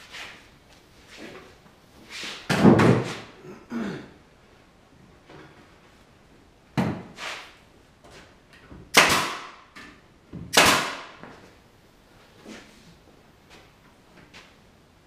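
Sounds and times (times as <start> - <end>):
sharp bangs on wood: 8.9 - 9.6, 10.5 - 11.2.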